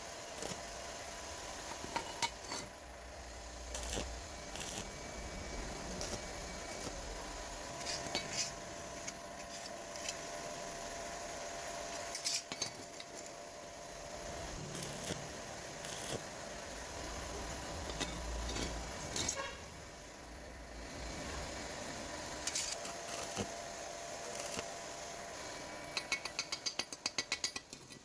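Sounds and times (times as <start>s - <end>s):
metallic clinks of steel parts: 12.1s - 13.4s, 17.9s - 19.4s, 22.4s - 23.4s.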